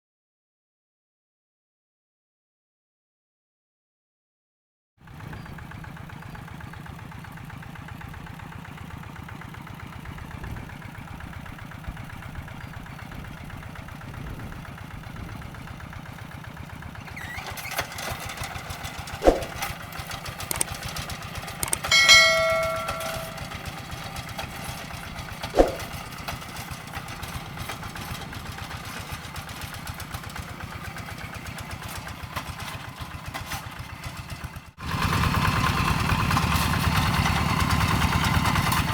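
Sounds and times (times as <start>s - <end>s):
diesel engine chugging: 5.1s - 38.9s
sharp knocks: 21.6s - 23.5s
metallic ringing tone: 21.6s - 23.7s, 25.6s - 26.0s.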